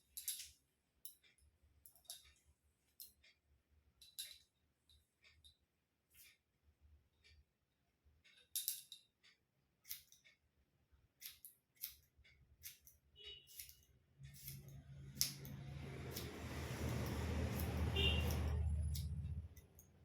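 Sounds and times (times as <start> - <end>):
scissors snipping hair: 11.2 - 12.9, 13.5 - 20.0.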